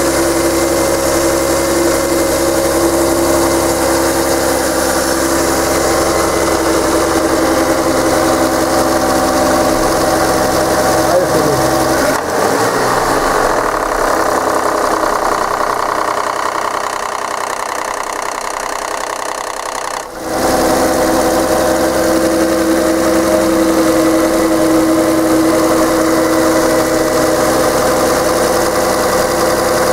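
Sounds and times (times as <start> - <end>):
car engine idling: 0.0 - 29.9.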